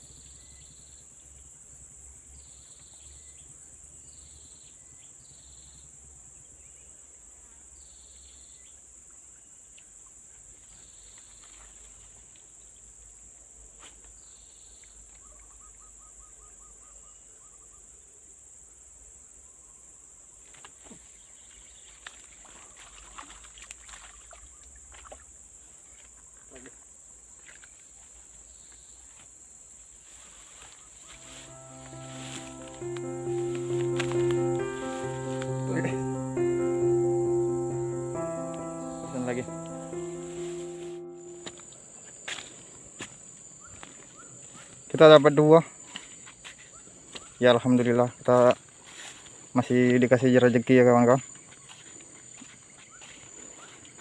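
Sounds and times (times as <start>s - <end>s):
insect chorus chirping: 26.7s - 42.4s
insect trill: 28.5s - 42.4s.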